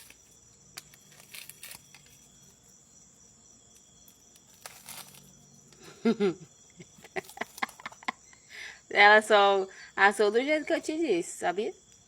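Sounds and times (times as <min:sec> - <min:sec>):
crickets chirring: 0:00.0 - 0:12.0
faint crackles and rustles: 0:03.8 - 0:05.8.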